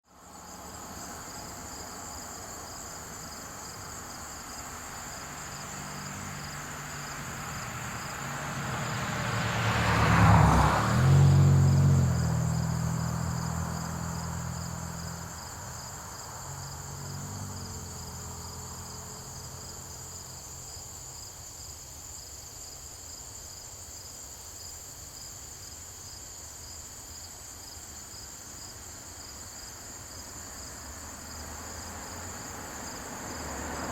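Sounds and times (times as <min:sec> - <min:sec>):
car passing by: 0:00.1 - 0:21.3, 0:29.4 - 0:33.9
crickets chirring: 0:00.1 - 0:33.9.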